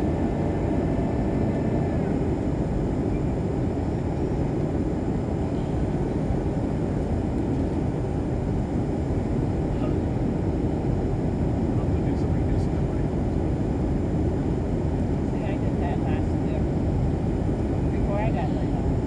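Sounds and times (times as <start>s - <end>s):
airplane cabin engine roar: 0.0s - 19.0s.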